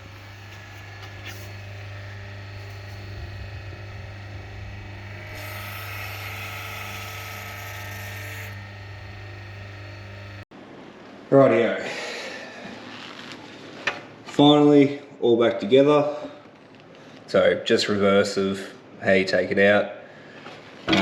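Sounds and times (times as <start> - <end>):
power tool whirring hiss: 0.0 - 10.4
steady low hum: 0.0 - 10.5.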